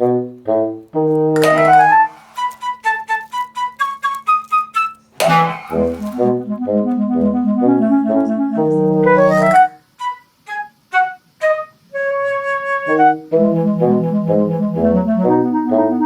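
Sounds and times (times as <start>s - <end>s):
instrumental background music: 0.0s - 11.7s.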